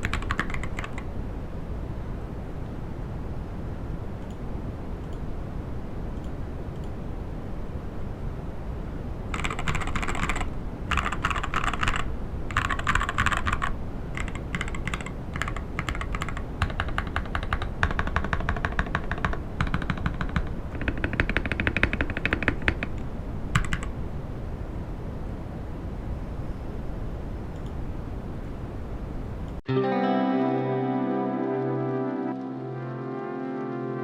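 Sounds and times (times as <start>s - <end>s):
mechanical keyboard typing: 0.0s - 1.1s, 9.3s - 23.9s.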